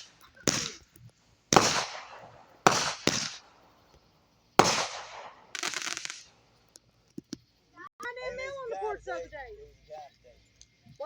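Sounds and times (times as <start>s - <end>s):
fireworks bangs: 0.0s - 6.4s.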